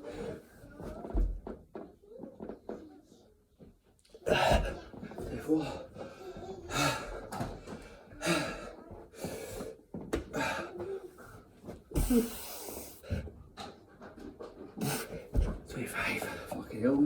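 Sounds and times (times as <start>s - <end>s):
man gasping and snorting breaths: 4.3s - 11.1s, 11.9s - 13.4s, 14.8s - 15.4s.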